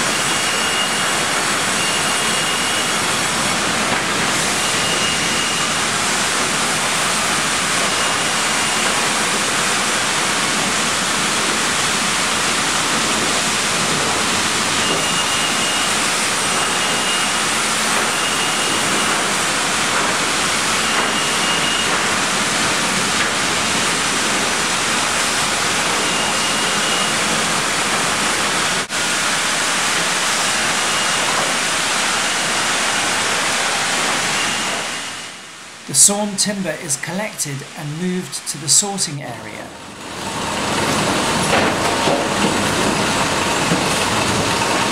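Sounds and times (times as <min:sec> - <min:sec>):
sawmill machinery running: 0:00.0 - 0:36.5, 0:39.7 - 0:44.9.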